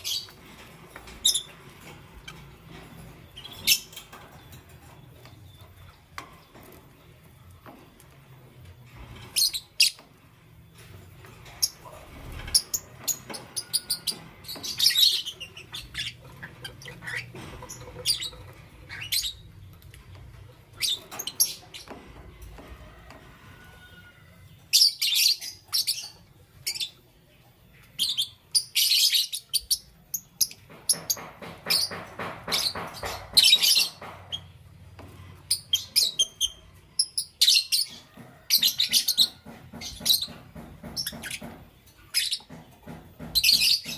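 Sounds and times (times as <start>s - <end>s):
buzzy bird chatter: 0.0s - 7.9s, 8.8s - 22.5s, 24.7s - 43.9s
lovebirds chirping: 10.8s - 22.0s.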